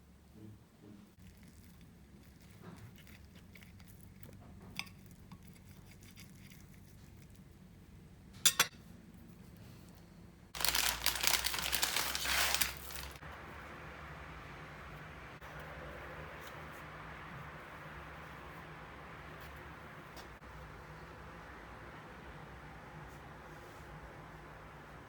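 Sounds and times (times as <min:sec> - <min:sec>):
glass clinking: 0:08.4 - 0:08.7
loud dense rustling: 0:10.6 - 0:13.2.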